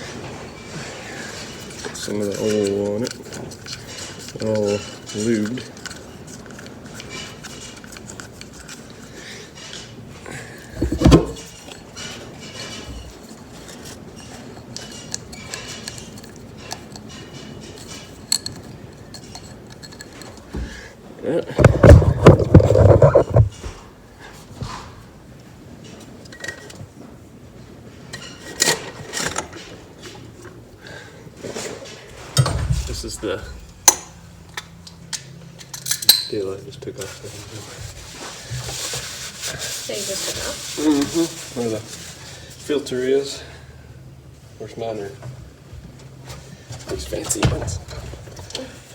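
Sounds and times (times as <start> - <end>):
metal parts clinking: 10.8 - 20.5, 32.4 - 36.4
heavy knock: 32.4 - 33.2.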